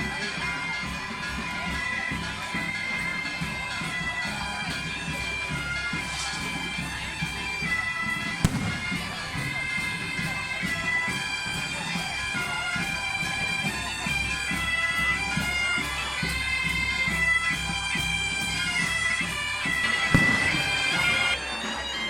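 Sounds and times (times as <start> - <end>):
bagpipe melody with drone: 0.0 - 22.0
drum beating: 8.0 - 12.1, 20.0 - 21.4
sharp bang: 8.5 - 9.5.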